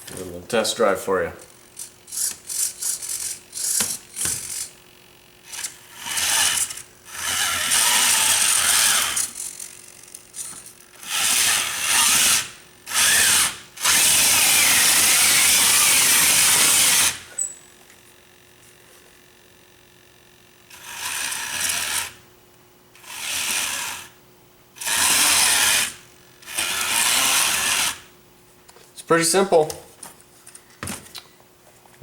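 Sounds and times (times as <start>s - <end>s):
toy bulldozer motors whirring: 1.4s - 4.8s, 5.4s - 17.6s, 20.7s - 22.2s, 23.0s - 24.2s, 24.8s - 28.1s.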